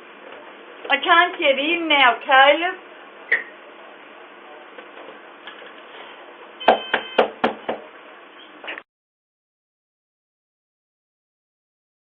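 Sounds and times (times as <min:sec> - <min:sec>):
knocking on a door: 0:06.6 - 0:07.8.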